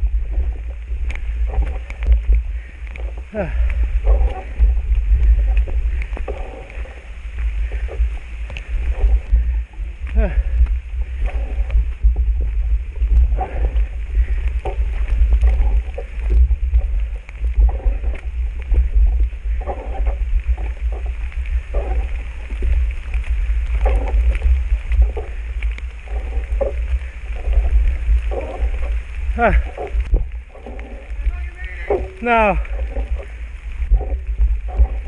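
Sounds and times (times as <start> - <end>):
wind rumble on microphone: 0.0 - 35.0
person breathing hard and groaning: 2.6 - 4.6, 8.7 - 10.7.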